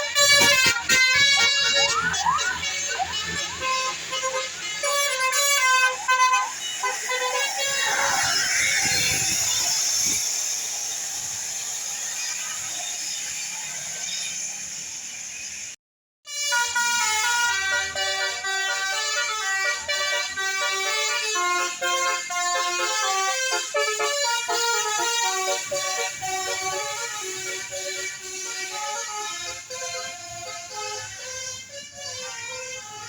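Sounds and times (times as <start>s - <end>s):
bus air horn melody: 0.0s - 10.2s, 16.3s - 33.0s
hiss: 6.6s - 15.8s.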